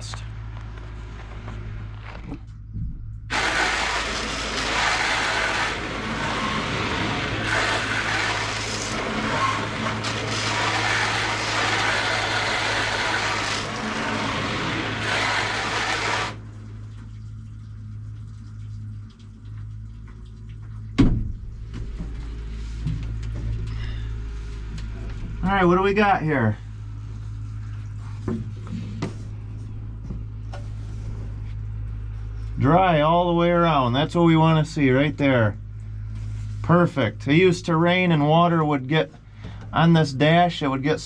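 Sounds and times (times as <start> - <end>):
low steady hum: 0.0 - 41.0
water spraying on windshield: 3.3 - 19.0.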